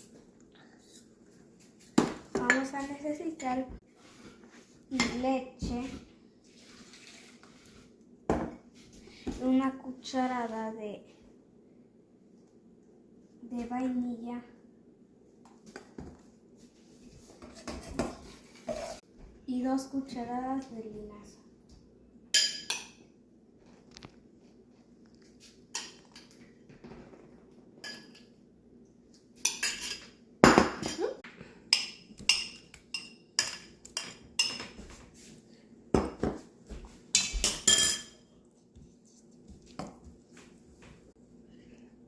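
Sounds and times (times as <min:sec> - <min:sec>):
utensils clinking against dishes: 0:29.4 - 0:30.1, 0:30.8 - 0:34.8, 0:37.1 - 0:38.3.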